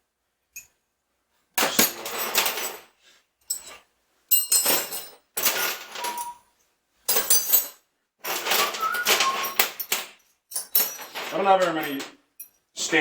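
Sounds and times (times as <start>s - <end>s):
metal hardware clinking: 3.5s - 6.4s, 7.1s - 12.6s.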